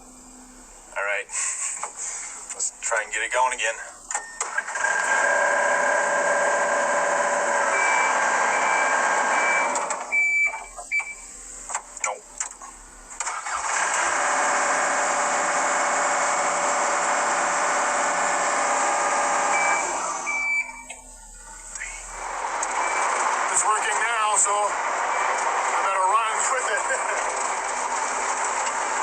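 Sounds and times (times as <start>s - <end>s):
diesel engine running: 13.2s - 20.6s, 21.6s - 29.0s
short warning beeps: 19.6s - 21.0s.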